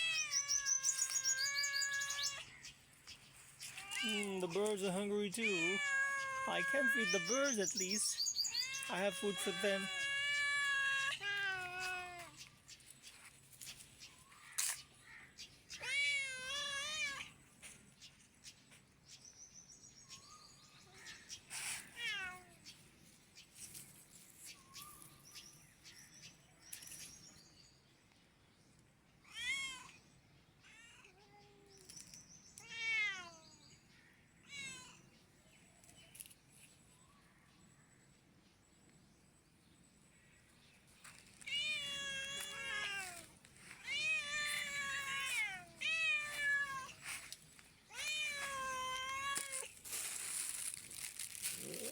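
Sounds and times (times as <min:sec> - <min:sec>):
cat meowing: 0:00.0 - 0:02.5, 0:03.7 - 0:04.4, 0:05.4 - 0:07.8, 0:08.5 - 0:12.4, 0:21.9 - 0:22.6, 0:32.6 - 0:33.5, 0:34.4 - 0:35.0, 0:41.4 - 0:47.2, 0:47.9 - 0:49.8.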